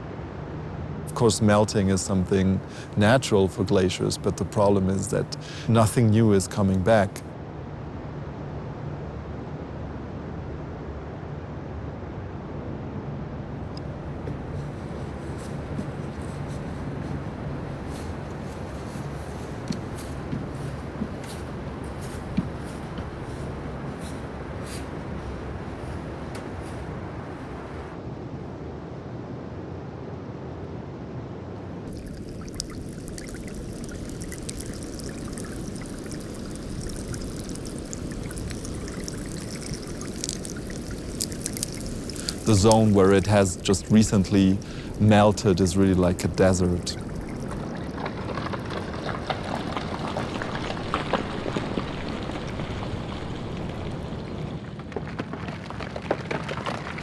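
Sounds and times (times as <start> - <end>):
ice clicks and crackles: 1.1 - 7.2, 13.8 - 26.8, 31.9 - 57.0
meltwater rumbling: 1.1 - 7.2, 31.8 - 57.0.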